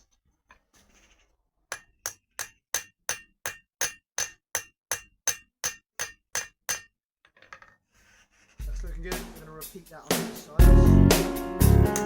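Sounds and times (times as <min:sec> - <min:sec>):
hammer blows on steel: 0:09.4 - 0:12.0.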